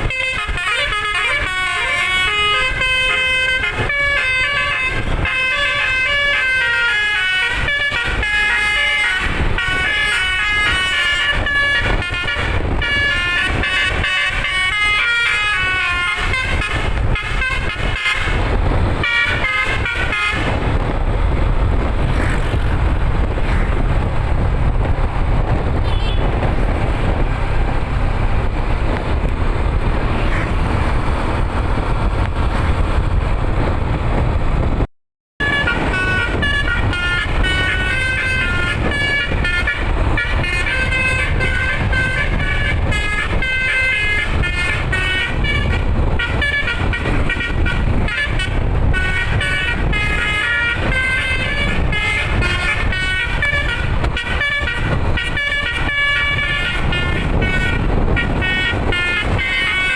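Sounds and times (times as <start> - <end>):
electric horn playing a tune: 0.0 - 20.8, 35.4 - 59.9
bus engine: 0.0 - 59.9
road noise: 0.0 - 59.9.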